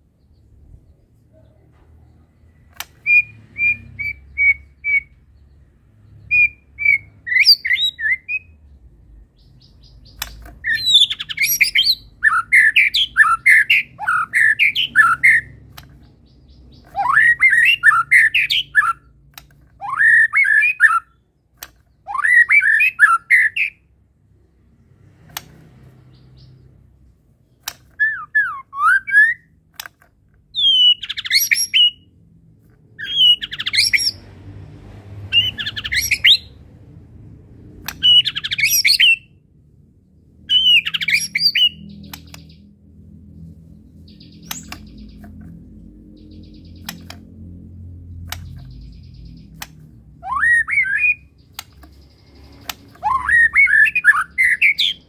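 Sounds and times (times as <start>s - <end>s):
songbird singing varied phrases: 0.0s - 23.8s, 30.5s - 32.1s, 33.0s - 34.3s, 35.2s - 36.6s, 37.8s - 39.3s, 40.4s - 42.7s, 43.9s - 47.4s, 48.2s - 55.0s
sharp bird clicks: 2.0s - 8.5s, 9.3s - 23.8s, 24.8s - 28.4s, 29.0s - 32.0s, 32.6s - 36.6s, 37.7s - 39.2s, 40.5s - 55.0s.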